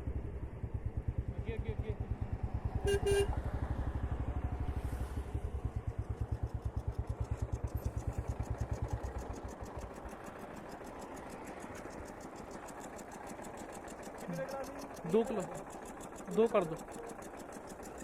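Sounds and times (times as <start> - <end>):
motorcycle engine idling: 0.0 - 18.0
light ticking: 6.4 - 18.0.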